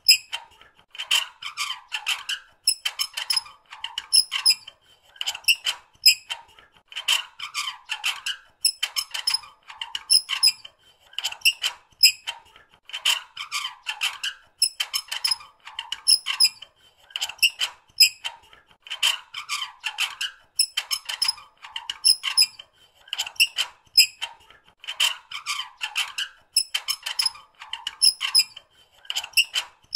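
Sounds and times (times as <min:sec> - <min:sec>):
metal squeaking: 0:02.7 - 0:04.7, 0:08.6 - 0:10.6, 0:14.6 - 0:16.6, 0:20.6 - 0:21.4, 0:22.0 - 0:22.6, 0:26.6 - 0:28.6.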